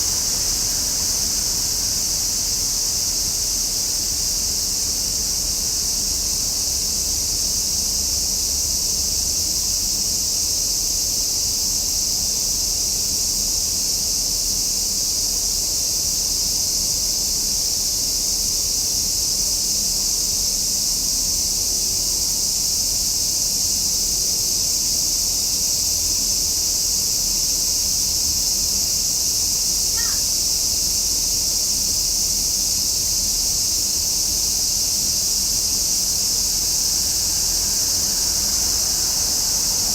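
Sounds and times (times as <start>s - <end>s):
cicadas buzzing: 0.0s - 39.9s
short faint call: 30.0s - 30.3s.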